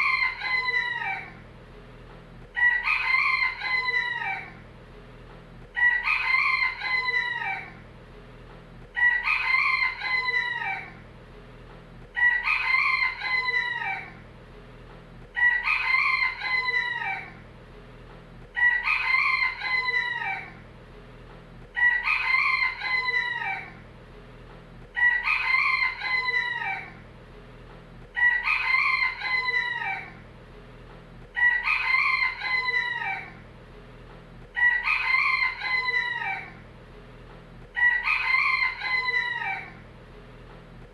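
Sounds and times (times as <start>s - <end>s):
rooster crowing: 0.0s - 1.4s, 2.6s - 4.6s, 5.8s - 7.8s, 9.0s - 11.0s, 12.2s - 14.2s, 15.4s - 17.4s, 18.6s - 20.6s, 21.8s - 23.8s, 25.0s - 27.0s, 28.2s - 30.2s, 31.3s - 33.4s, 34.5s - 36.6s, 37.7s - 39.8s.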